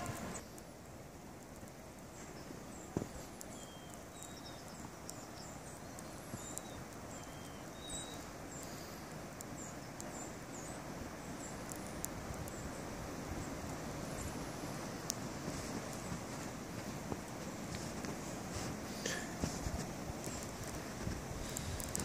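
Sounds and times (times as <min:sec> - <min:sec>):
small birds chirping: 0:00.0 - 0:00.9, 0:01.5 - 0:22.0
blizzard wind rushing: 0:08.1 - 0:22.0.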